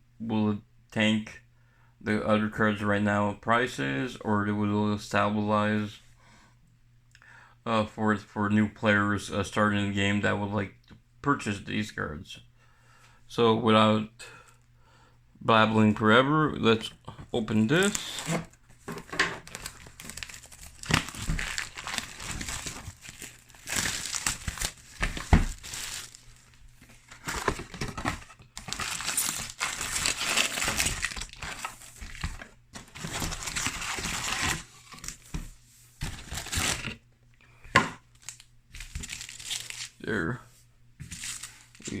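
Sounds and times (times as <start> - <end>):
plastic shrink-wrap crinkling: 17.7 - 35.2, 36.0 - 37.0, 38.1 - 40.0, 41.0 - 42.0.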